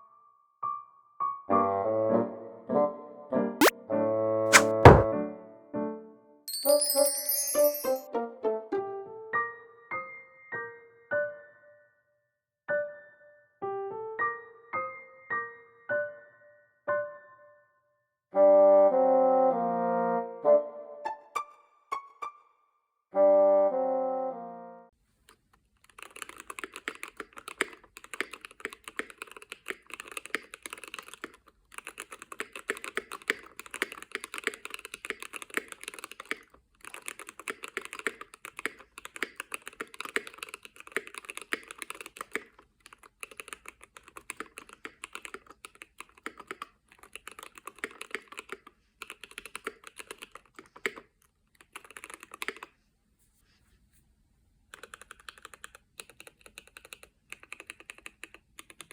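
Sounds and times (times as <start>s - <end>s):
mechanical keyboard typing: 25.8s - 52.7s, 54.7s - 58.9s.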